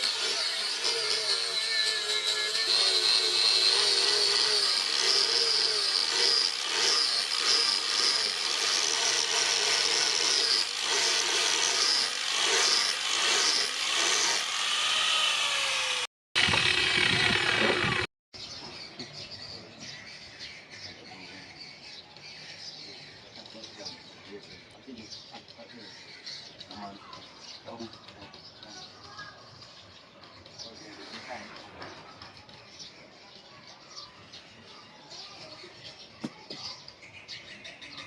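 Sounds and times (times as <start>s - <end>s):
power tool running under load: 0.0s - 18.1s.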